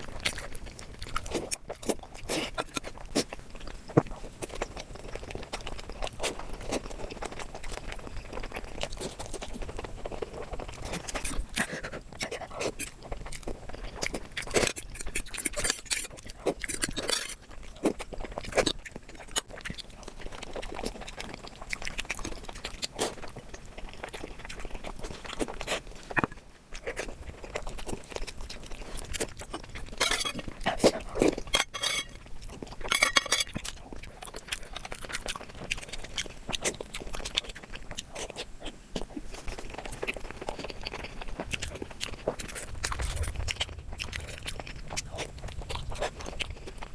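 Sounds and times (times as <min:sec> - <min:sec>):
chewing and crunching food: 0:00.0 - 0:46.9
utensils clinking against dishes: 0:30.0 - 0:30.4, 0:31.5 - 0:32.2, 0:32.9 - 0:33.6.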